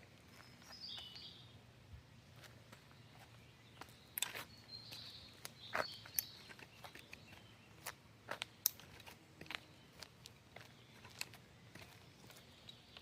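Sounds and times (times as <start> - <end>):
bird chirps: 0.3 - 1.6, 2.3 - 8.9.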